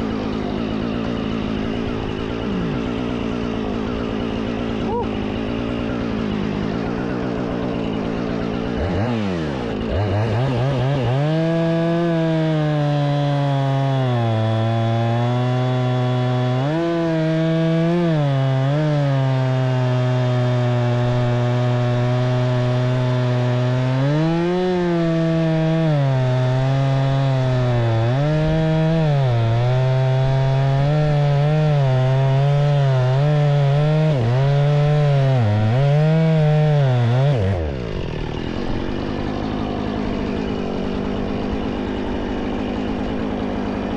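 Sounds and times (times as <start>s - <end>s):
chainsaw cutting wood: 0.0s - 43.9s.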